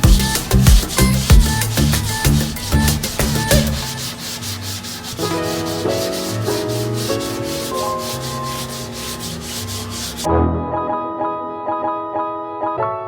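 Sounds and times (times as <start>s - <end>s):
background music with plucked notes: 0.0s - 3.8s, 10.3s - 13.0s
sandpaper rubbing on filler: 0.0s - 10.3s.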